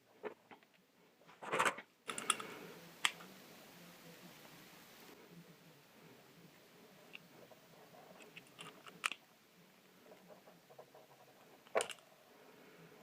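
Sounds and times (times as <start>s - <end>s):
small parts clicking and tapping: 2.1s - 3.3s, 8.2s - 9.2s, 11.6s - 12.1s.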